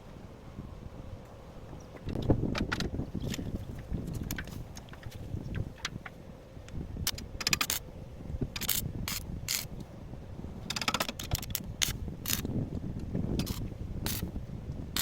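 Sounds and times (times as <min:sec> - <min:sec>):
mechanical clicking and clacking: 0:07.0 - 0:07.8, 0:10.7 - 0:12.5.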